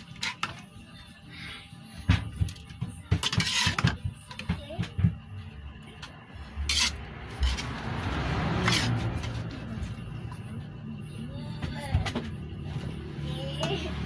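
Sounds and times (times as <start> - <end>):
utensil knocking on cooking pan: 2.0 - 5.3.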